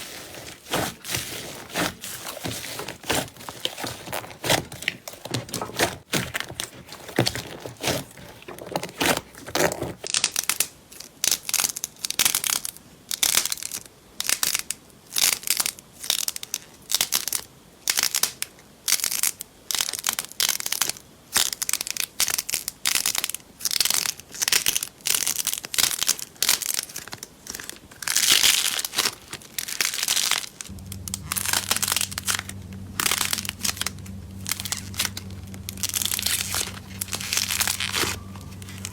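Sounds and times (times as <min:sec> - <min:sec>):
slime crackling and crunching: 0:25.3 - 0:38.9
steady low hum: 0:30.7 - 0:38.9.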